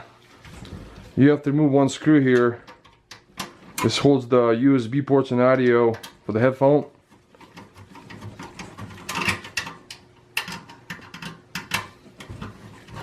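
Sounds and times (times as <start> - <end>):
screwdriver clicking and scraping: 7.2 - 13.0.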